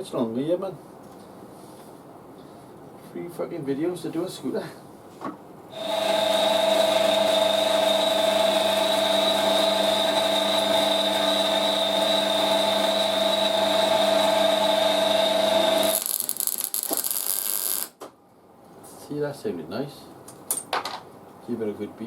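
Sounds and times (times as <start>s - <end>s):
electric welder arc buzzing: 5.7s - 18.0s.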